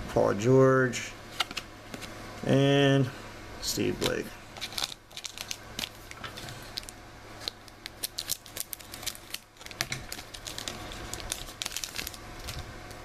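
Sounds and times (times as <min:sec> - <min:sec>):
card wrapper crinkling and clicking: 0:04.0 - 0:13.0.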